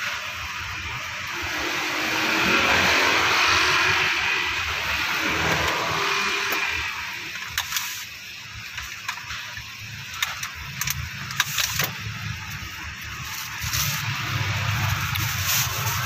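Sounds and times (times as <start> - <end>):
passing vehicle: 1.3 - 7.5.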